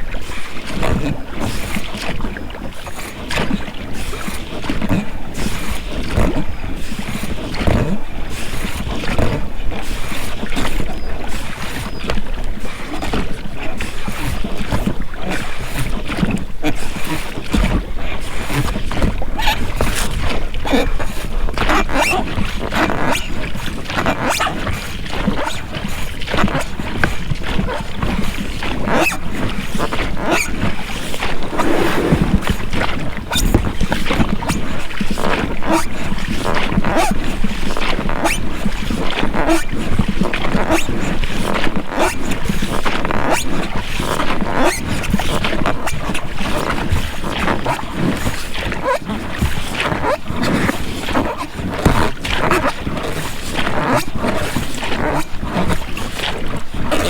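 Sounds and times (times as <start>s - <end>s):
oars splashing in water: 0.0s - 57.0s.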